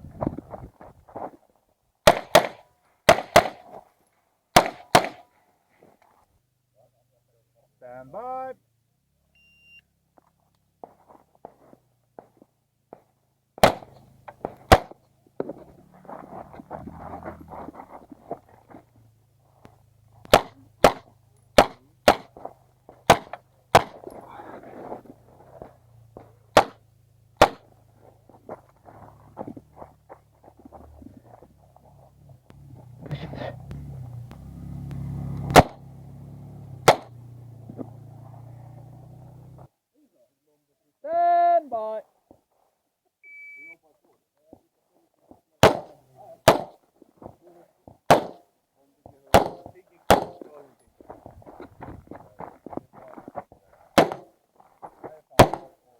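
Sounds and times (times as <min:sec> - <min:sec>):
scuffing and clattering movement: 0:00.0 - 0:01.7, 0:10.2 - 0:13.2, 0:13.8 - 0:21.6, 0:22.3 - 0:35.4, 0:44.0 - 0:48.1, 0:48.9 - 0:55.9
pistol shots: 0:02.0 - 0:03.8, 0:04.5 - 0:05.3, 0:13.6 - 0:14.0, 0:14.6 - 0:15.0, 0:20.3 - 0:24.2, 0:26.5 - 0:26.8, 0:27.4 - 0:27.7, 0:35.5 - 0:35.8, 0:36.8 - 0:37.2, 0:45.6 - 0:46.8, 0:48.1 - 0:48.4, 0:49.3 - 0:50.5, 0:54.0 - 0:54.3, 0:55.4 - 0:55.8.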